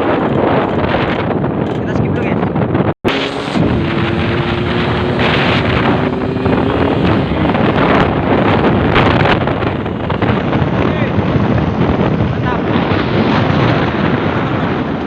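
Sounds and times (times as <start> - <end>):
wind buffeting microphone: 0.0 - 15.0
motorcycle engine running: 3.1 - 12.3.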